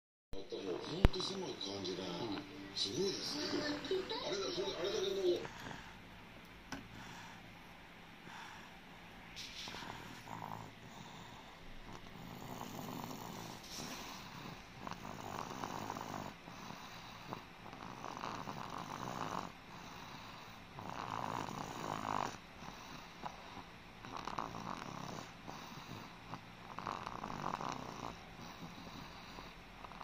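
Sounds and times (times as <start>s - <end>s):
boy snoring: 3.3s - 6.0s, 9.4s - 30.0s.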